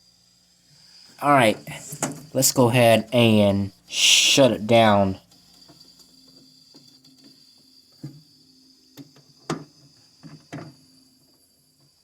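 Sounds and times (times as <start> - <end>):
refrigerator compressor humming: 0.0 - 5.6.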